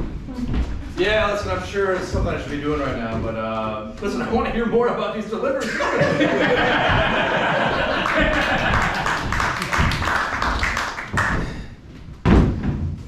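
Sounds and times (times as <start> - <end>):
audience clapping: 6.2 - 11.7
loud thump: 6.4 - 8.4.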